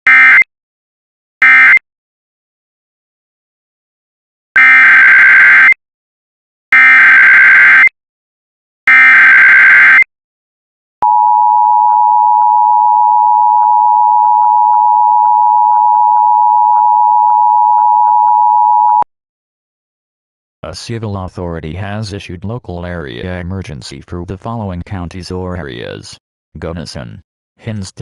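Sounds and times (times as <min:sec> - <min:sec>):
two-tone alarm: 0:00.1 - 0:00.5, 0:01.4 - 0:01.8, 0:04.6 - 0:05.8, 0:06.8 - 0:07.9, 0:08.9 - 0:10.1, 0:11.0 - 0:19.0.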